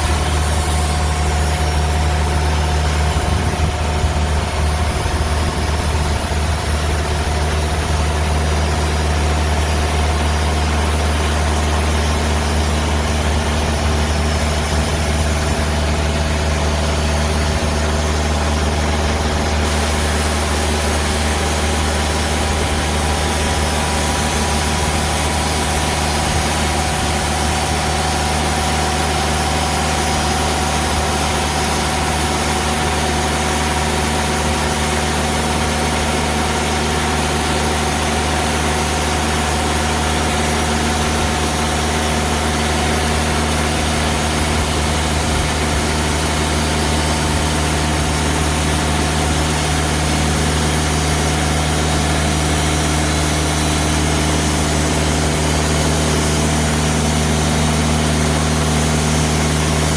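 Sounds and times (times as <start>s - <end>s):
band saw cutting log: 0.0s - 59.9s
diesel engine running under load: 0.0s - 59.9s.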